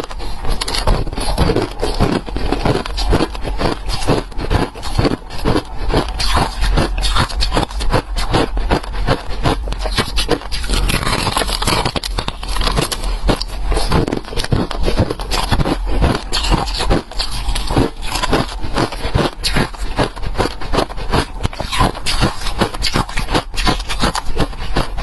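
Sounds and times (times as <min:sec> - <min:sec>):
chewing ice crunches: 0:00.0 - 0:25.0.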